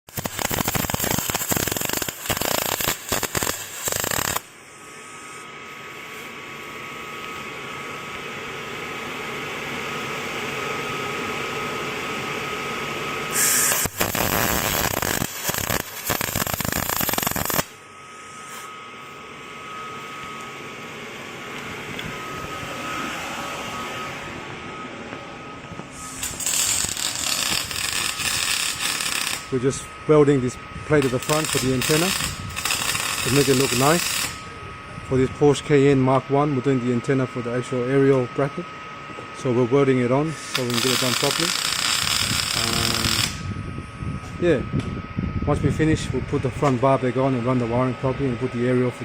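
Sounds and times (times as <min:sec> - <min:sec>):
crackling welding arc: 0:00.0 - 0:04.5, 0:13.3 - 0:17.8, 0:26.0 - 0:34.6, 0:40.3 - 0:43.4
steady hum with faint whine: 0:00.1 - 0:49.0.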